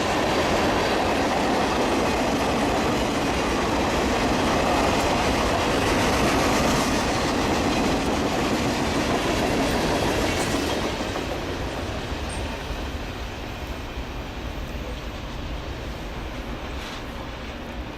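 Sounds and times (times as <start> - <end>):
train wheels clattering: 0.0 - 13.9.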